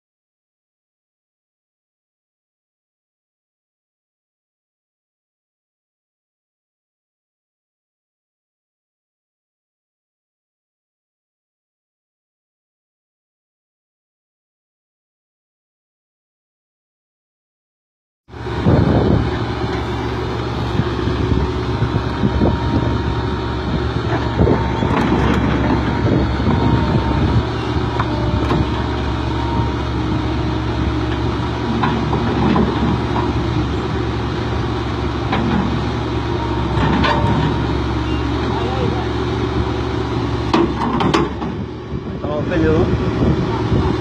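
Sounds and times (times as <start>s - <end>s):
diesel engine rumbling: 18.3s - 44.0s
metallic knocks and clanks: 40.5s - 41.6s.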